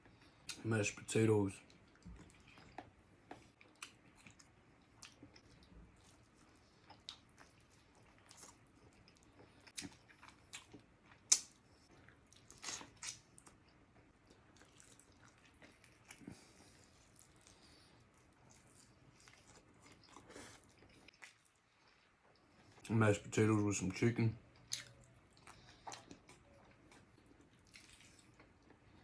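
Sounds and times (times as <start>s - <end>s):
person chewing food: 1.6s - 22.9s, 24.4s - 29.0s
wet mouth clicks and smacks: 11.3s - 11.6s.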